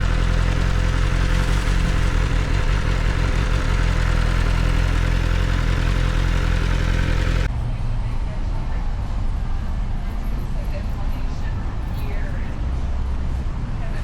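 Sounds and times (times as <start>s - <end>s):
motorcycle engine droning: 0.0s - 7.5s.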